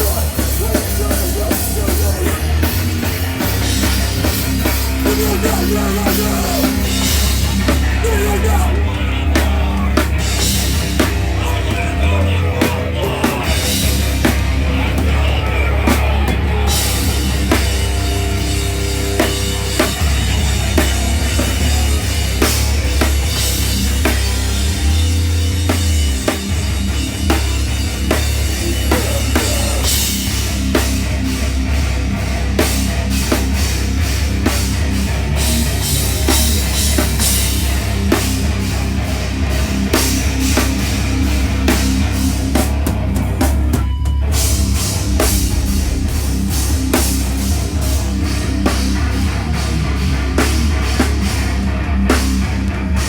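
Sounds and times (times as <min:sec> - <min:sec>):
live heavy metal band: 0:00.0 - 0:53.0.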